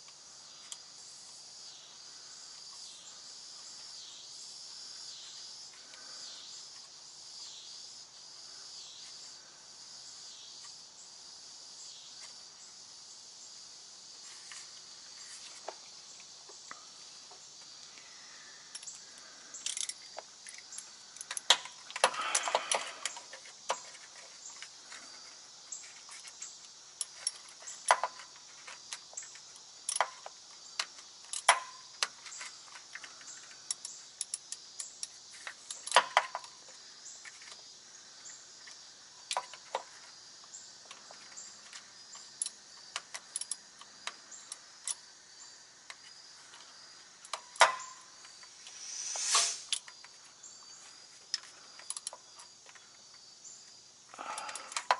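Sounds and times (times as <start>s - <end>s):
short rustle: 48.5s - 49.8s.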